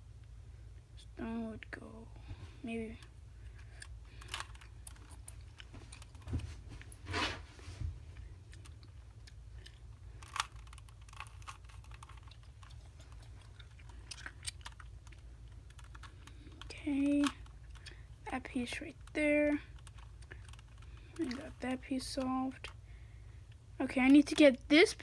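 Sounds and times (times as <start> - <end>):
puzzle cube twisting clicks: 3.6 - 6.3, 8.6 - 22.8.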